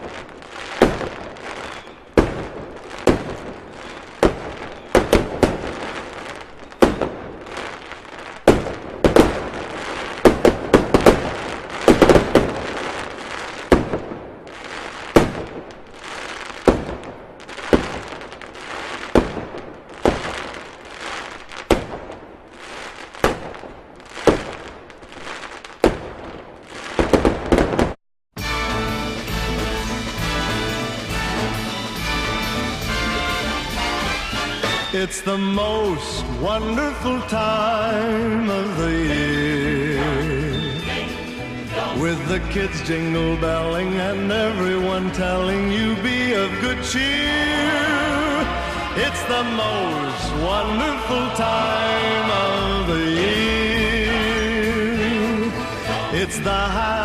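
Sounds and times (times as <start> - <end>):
fireworks bangs: 0.0 - 57.0
fireworks crackling: 0.0 - 57.0
music: 28.4 - 57.0.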